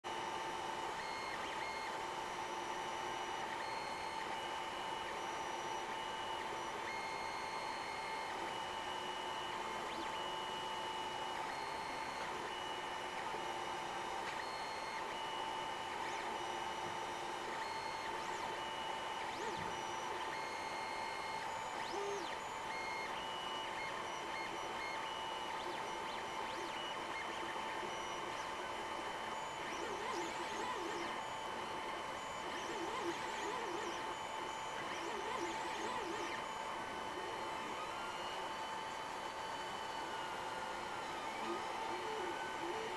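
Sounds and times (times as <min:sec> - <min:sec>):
three d printer motors whining: 0:00.1 - 0:42.9.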